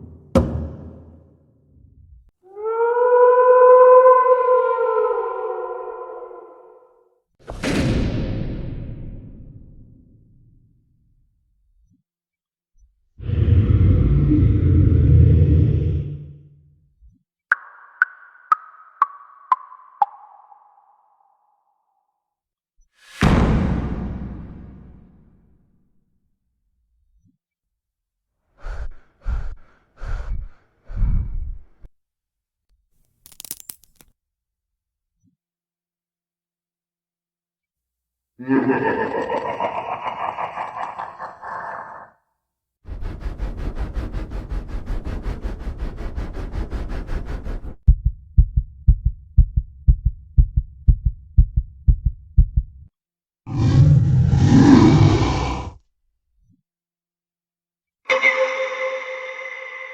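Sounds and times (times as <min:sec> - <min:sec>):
loud roar: 0:13.2 - 0:16.5, 0:53.5 - 0:55.8
heavy breathy exhalations: 0:28.5 - 0:31.8
sharp crackling clicks: 0:33.0 - 0:34.1
deep heartbeat-like thumps: 0:46.0 - 0:52.9.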